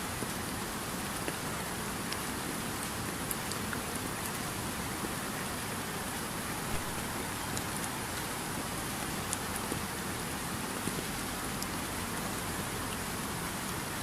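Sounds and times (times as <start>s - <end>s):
steady rain falling: 0.0s - 14.0s
rain drop ticks: 1.1s - 4.4s, 6.7s - 10.0s, 10.8s - 11.9s.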